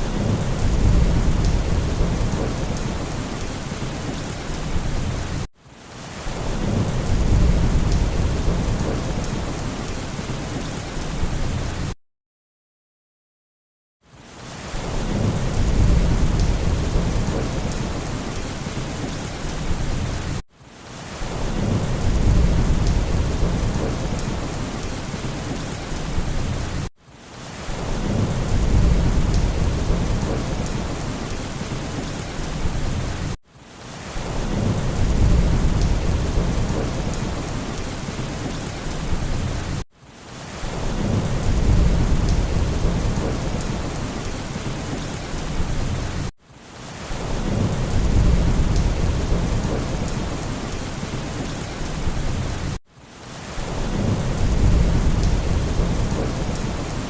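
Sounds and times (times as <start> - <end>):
low rolling thunder: 0.0 - 5.5, 6.4 - 9.9, 14.8 - 20.3, 21.3 - 26.9, 27.7 - 33.4, 34.2 - 39.8, 40.7 - 46.3, 47.2 - 50.8, 53.7 - 57.0
heavy rain hiss: 0.0 - 12.0, 14.2 - 57.0.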